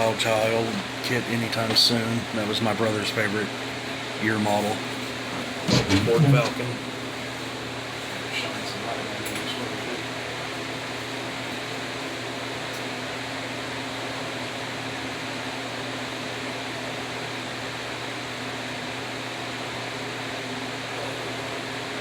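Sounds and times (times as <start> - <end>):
fan whirring: 0.0 - 12.6
low constant hum: 5.3 - 6.9.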